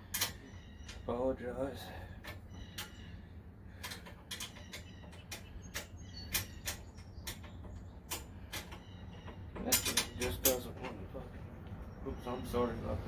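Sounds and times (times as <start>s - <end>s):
low wind rumble: 0.0s - 13.0s
wrench clinking on bolt: 9.6s - 11.0s.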